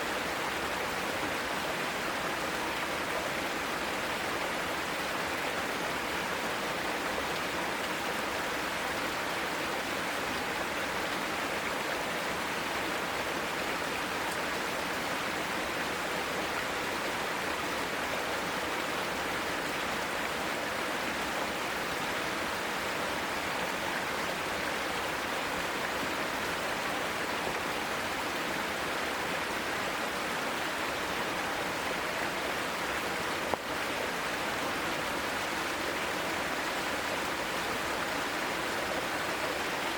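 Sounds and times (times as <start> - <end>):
stream rushing over rocks: 0.0 - 39.9.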